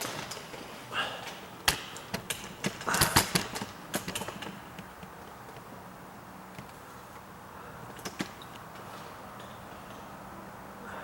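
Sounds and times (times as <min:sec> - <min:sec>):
handling clicks and knocks: 0:01.3 - 0:05.8, 0:06.5 - 0:10.1.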